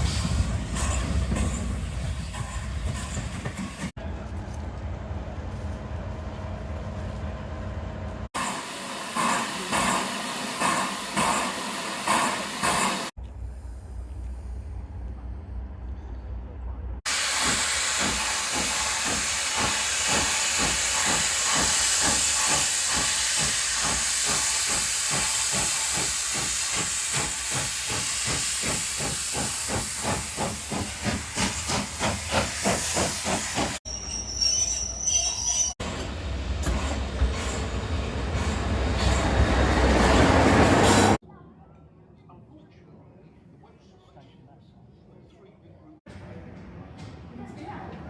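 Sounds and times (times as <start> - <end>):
steam hissing: 8.4 - 13.1, 17.1 - 34.0.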